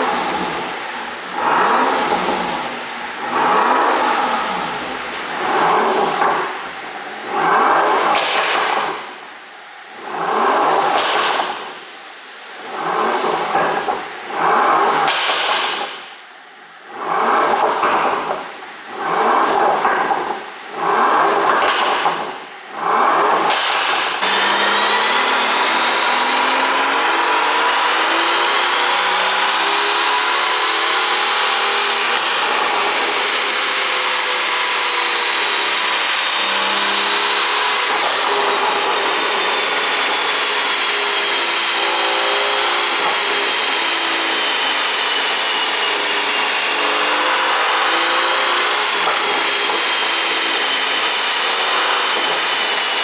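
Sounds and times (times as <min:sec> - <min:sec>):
car engine whining under load: 0:00.0 - 0:08.2, 0:24.1 - 0:53.0.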